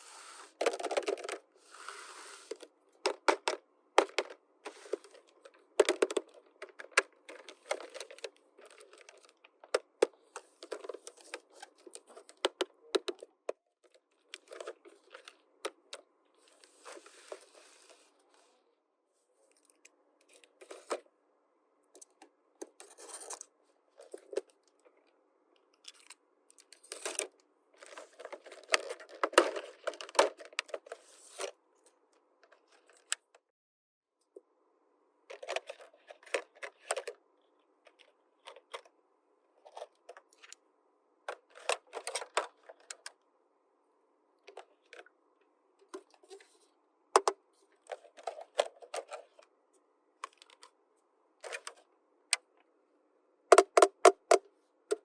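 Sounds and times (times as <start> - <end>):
plastic pieces clicking and tapping: 5.2 - 13.6, 53.5 - 55.0.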